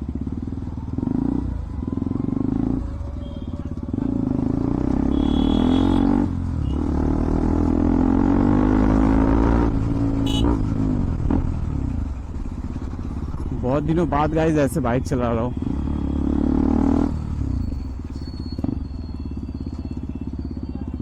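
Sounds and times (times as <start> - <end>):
motorcycle engine accelerating: 0.0 - 21.0.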